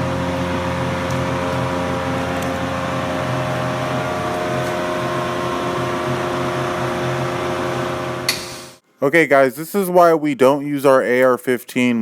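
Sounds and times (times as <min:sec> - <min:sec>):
motor humming: 0:00.0 - 0:08.8.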